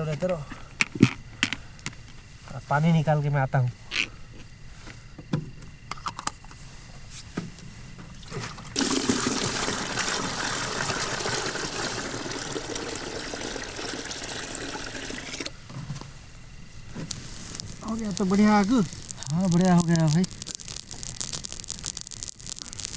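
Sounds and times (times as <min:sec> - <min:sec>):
water pouring into a pot: 0:08.7 - 0:15.5, 0:17.1 - 0:22.9.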